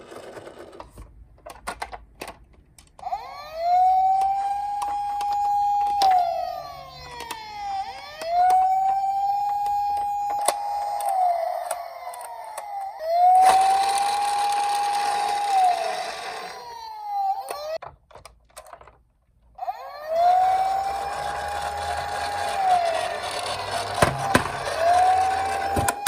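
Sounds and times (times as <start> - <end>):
whirring noise: 3.0 - 17.7, 19.6 - 26.0
toy electronic siren wailing: 3.0 - 17.8, 19.6 - 26.0.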